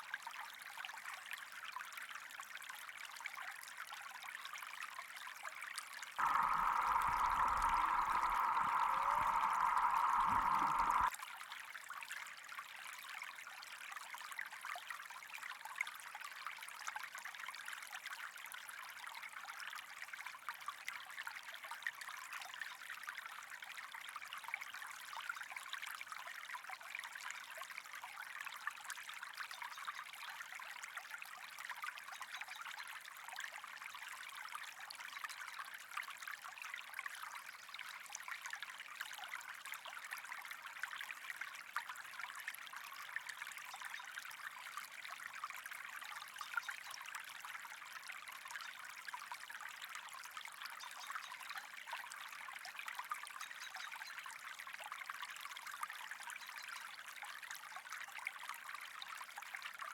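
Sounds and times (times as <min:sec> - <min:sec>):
water trickling: 0:06.2 - 0:11.1.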